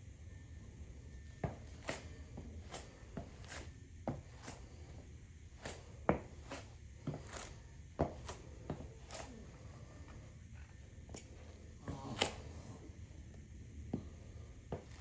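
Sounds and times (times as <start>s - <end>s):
light knocks and scuffs: 1.4s - 4.8s, 5.6s - 9.4s.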